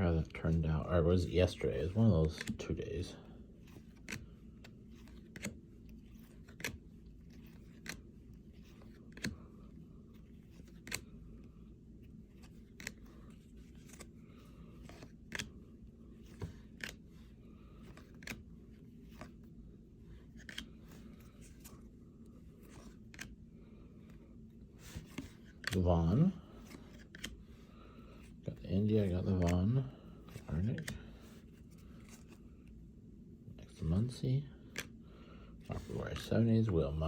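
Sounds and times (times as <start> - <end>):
steady low hum: 0.0 - 37.0
cards snapping: 2.2 - 2.7, 3.7 - 9.5, 10.1 - 11.2, 12.1 - 19.4, 20.2 - 21.8, 22.6 - 23.8, 24.8 - 25.8, 26.6 - 28.2, 34.6 - 35.0.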